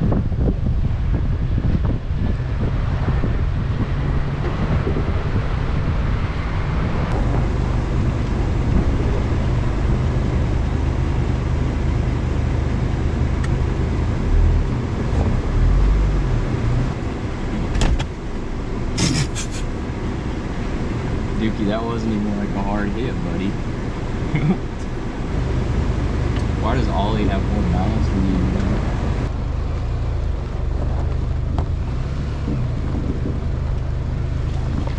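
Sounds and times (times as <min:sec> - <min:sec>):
heavy low thumps: 0:00.0 - 0:19.8
pickup engine drone: 0:00.0 - 0:34.9
tyres on rough trail: 0:07.0 - 0:34.9.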